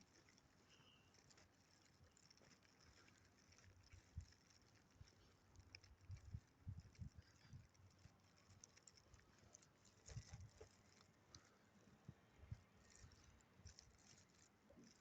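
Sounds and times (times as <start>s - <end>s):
faint ticks: 0.0s - 15.0s.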